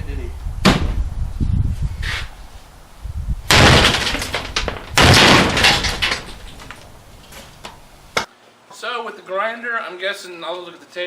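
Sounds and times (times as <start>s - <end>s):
axe crashing into dishwasher: 3.5s - 6.4s
metal clattering: 3.5s - 6.9s.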